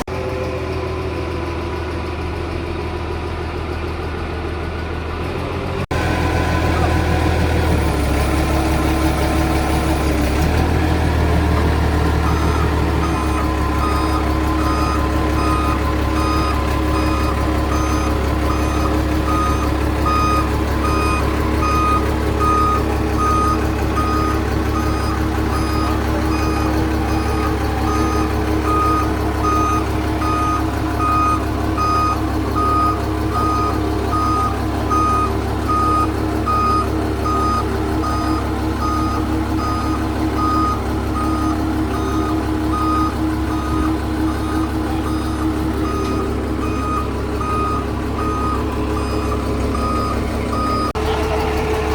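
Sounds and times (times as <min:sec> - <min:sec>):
engine droning: 0:00.0 - 0:51.9
reversing alarm beeping: 0:11.4 - 0:51.0.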